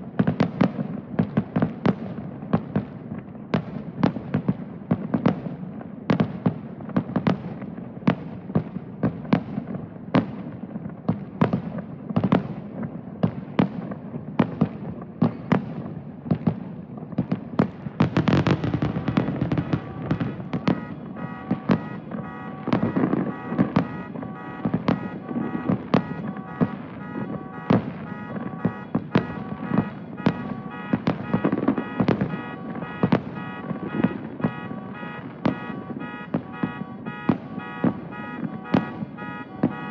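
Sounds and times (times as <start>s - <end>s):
fireworks bangs: 0.0s - 39.9s
fireworks crackling: 0.0s - 39.9s
pulsing car alarm: 18.0s - 39.9s.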